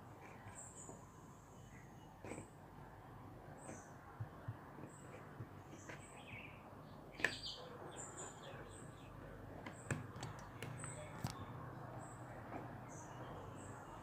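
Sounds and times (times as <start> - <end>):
faint high bird chirps: 5.8 - 9.2.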